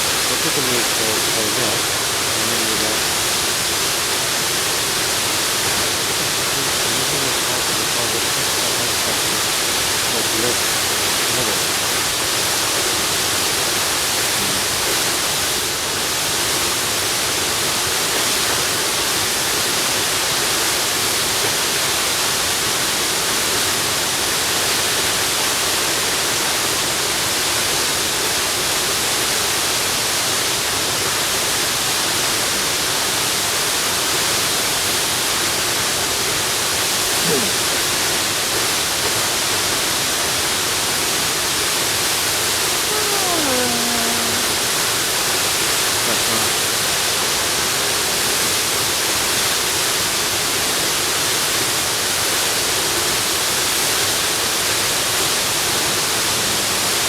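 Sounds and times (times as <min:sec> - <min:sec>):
waterfall rushing: 0:00.0 - 0:21.2, 0:35.4 - 0:57.0.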